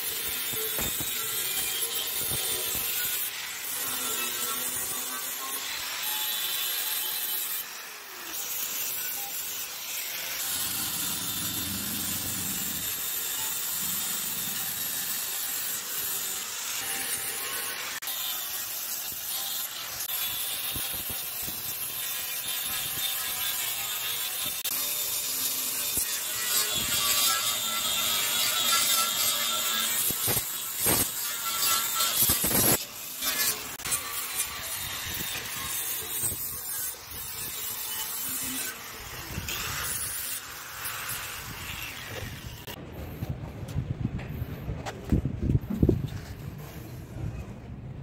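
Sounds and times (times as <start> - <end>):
abrasive rubbing and scraping: 10.4 - 16.1.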